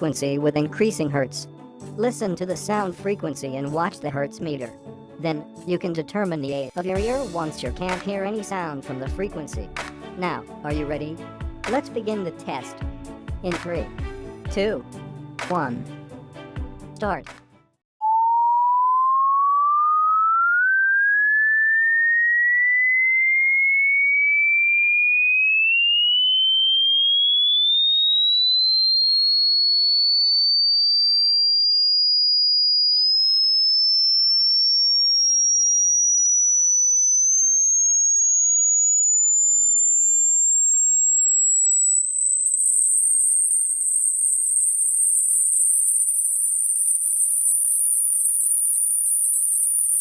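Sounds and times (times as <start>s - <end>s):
sine tone sweeping upward: 18.0s - 50.0s.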